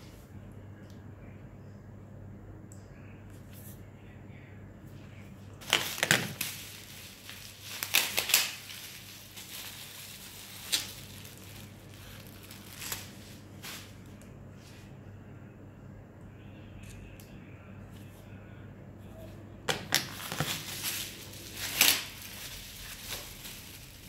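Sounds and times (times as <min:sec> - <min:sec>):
low steady hum: 0:00.0 - 0:24.0
plastic wrapping crinkling: 0:05.6 - 0:14.3, 0:19.7 - 0:24.0.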